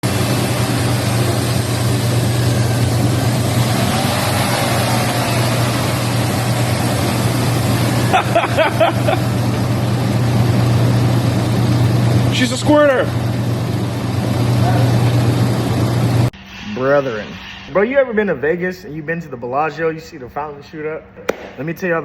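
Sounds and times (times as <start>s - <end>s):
car engine idling: 0.0s - 16.3s
coolant hissing from radiator: 0.0s - 16.3s.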